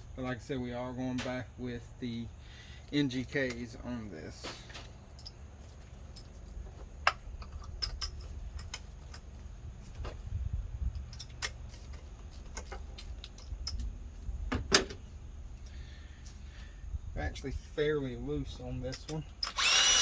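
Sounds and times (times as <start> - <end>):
ratchet and socket clicking: 19.1 - 20.0.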